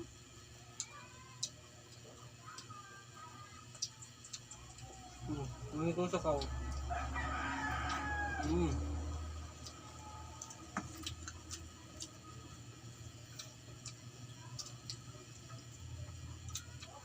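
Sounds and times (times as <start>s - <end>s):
steady low hum: 0.0s - 17.0s
chewing clicks and smacks: 3.5s - 4.9s, 9.6s - 12.2s, 13.2s - 17.0s.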